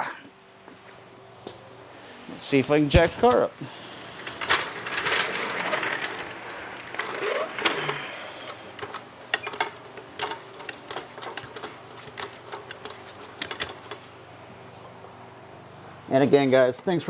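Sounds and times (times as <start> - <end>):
floor jack pumping clicks: 4.2 - 14.1.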